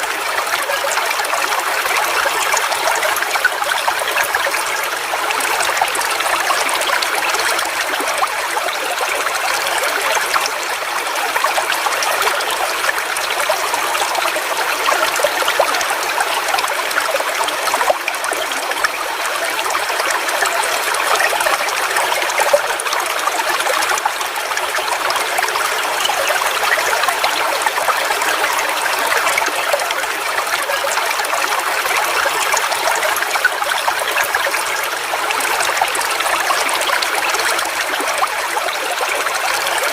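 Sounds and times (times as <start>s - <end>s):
small waterfall splashing: 0.0s - 39.9s.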